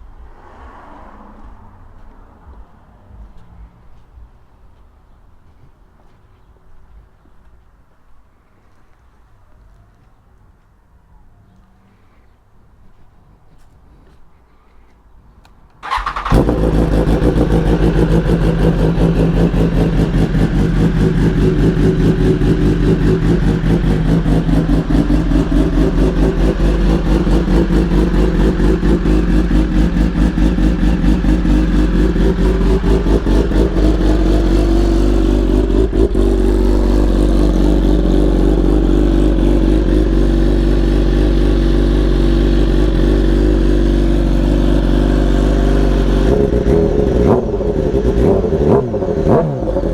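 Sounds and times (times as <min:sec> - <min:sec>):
motorcycle engine starting and idling: 0:15.7 - 0:49.9.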